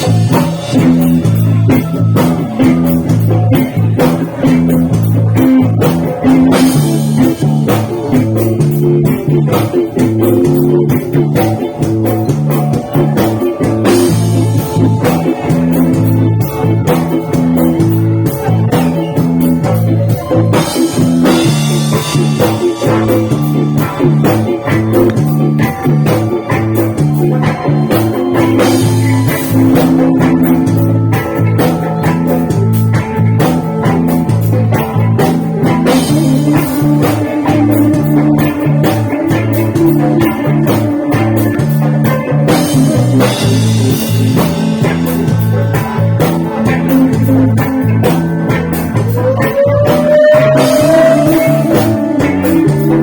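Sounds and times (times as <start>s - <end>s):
guitar-led band music: 0.0s - 53.0s
heavy bass line: 0.0s - 53.0s
steady drum beat: 0.0s - 53.0s.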